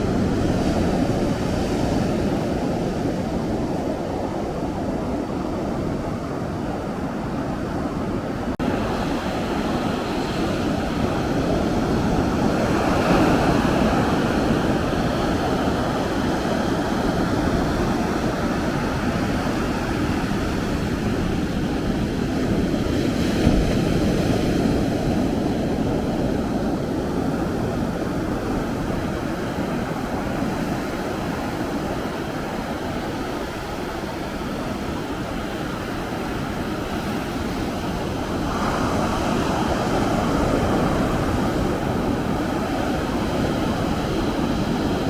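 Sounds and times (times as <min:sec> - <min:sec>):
ocean surf breaking: 0:00.0 - 0:45.0.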